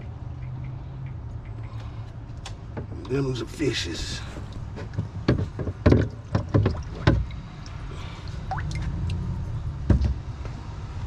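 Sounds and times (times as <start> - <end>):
irregular knocks and thumps: 4.4 - 7.4, 9.8 - 10.5.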